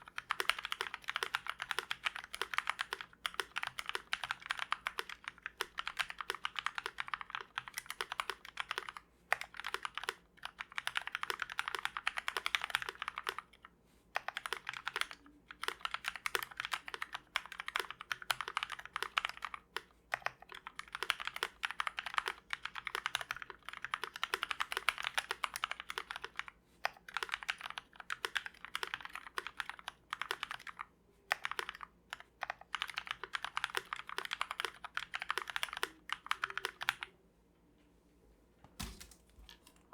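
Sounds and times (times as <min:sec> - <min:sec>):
fast typing on mechanical keyboard: 0:00.0 - 0:37.1.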